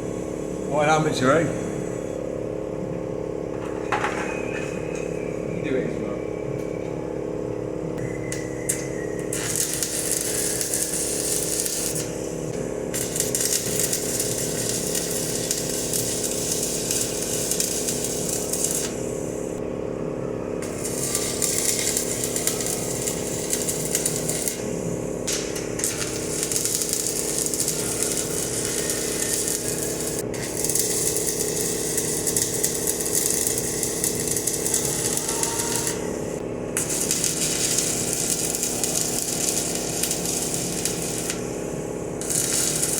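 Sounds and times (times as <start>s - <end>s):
steady machine hum: 0.0s - 42.9s
welding arc crackling: 8.3s - 19.6s, 20.6s - 42.9s.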